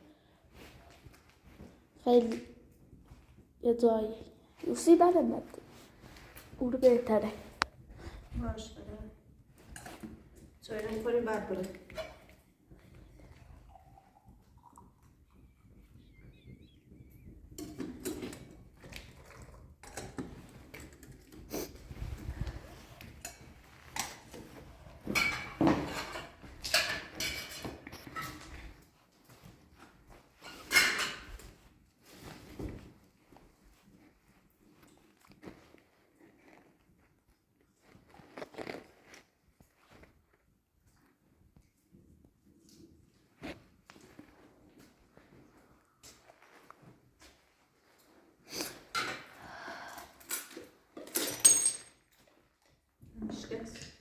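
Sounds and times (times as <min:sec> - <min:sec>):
rustling: 0:31.3 - 0:42.3.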